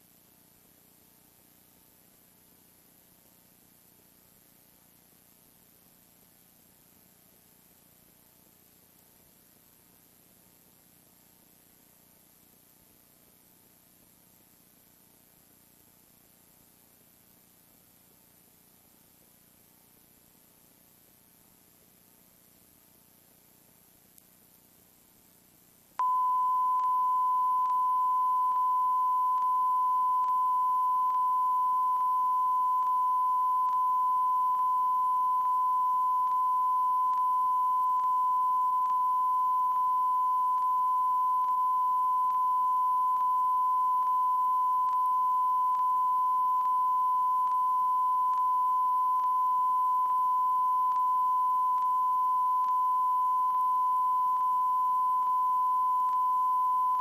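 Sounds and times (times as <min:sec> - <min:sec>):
high-pitched test tone: 0:26.0 - 0:57.0.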